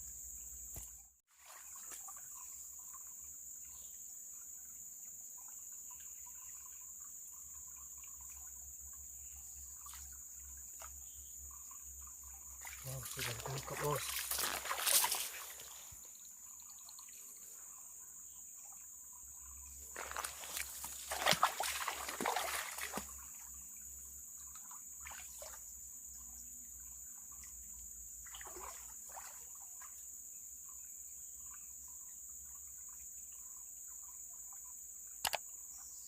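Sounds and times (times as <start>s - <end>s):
water trickling in river: 0.1s - 36.0s
high insect drone: 1.6s - 36.0s.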